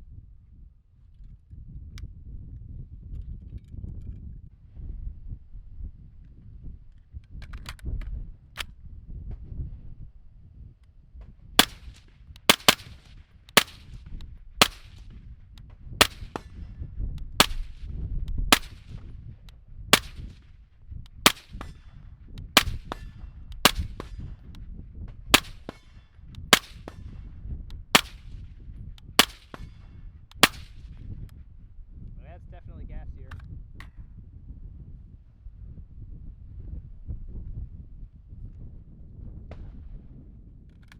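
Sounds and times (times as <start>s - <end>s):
suppressed rifle shots: 11.6s - 15.3s, 16.0s - 16.7s, 17.4s - 19.1s, 19.9s - 20.4s, 21.2s - 21.9s, 22.6s - 24.4s, 25.3s - 27.2s, 27.9s - 28.4s, 29.2s - 31.0s.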